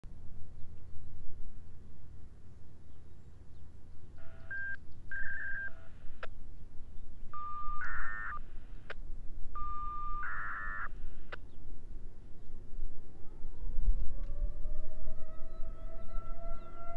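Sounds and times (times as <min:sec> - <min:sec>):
low wind rumble: 0:00.0 - 0:16.9
short beeps: 0:04.2 - 0:05.9, 0:07.4 - 0:08.4, 0:09.6 - 0:10.9
electronic signalling tones: 0:04.2 - 0:06.0, 0:07.3 - 0:08.4, 0:09.6 - 0:11.0
sharp clicks: 0:07.7 - 0:09.0.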